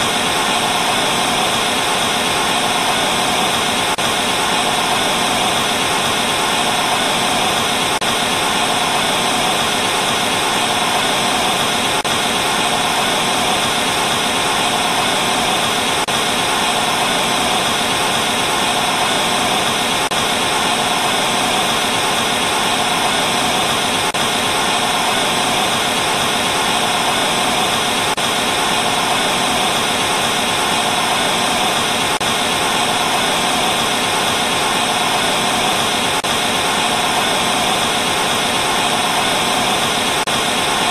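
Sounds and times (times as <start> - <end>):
television static hiss: 0.0 - 40.9.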